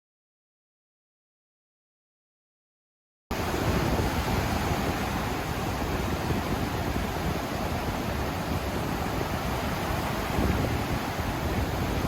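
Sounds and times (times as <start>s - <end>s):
ocean surf washing on beach: 3.3s - 12.0s
wind buffeting microphone: 3.3s - 12.0s.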